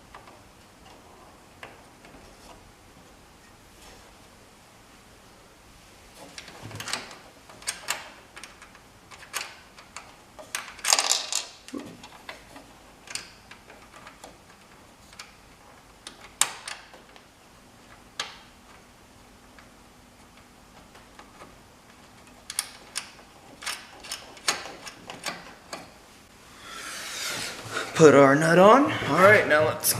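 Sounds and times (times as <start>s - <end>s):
metal hardware clicking and clinking: 6.4s - 15.4s, 22.2s - 26.0s.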